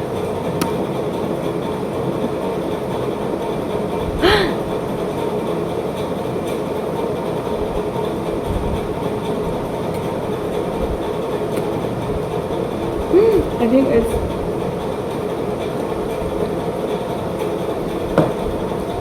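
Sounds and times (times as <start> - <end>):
faint hum: 0.0 - 5.5.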